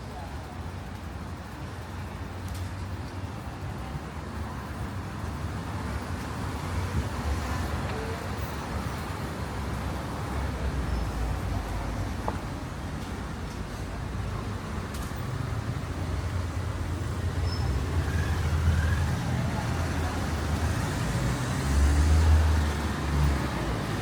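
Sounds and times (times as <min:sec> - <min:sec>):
road traffic rumble: 0:00.0 - 0:24.0
urban hum: 0:00.0 - 0:24.0.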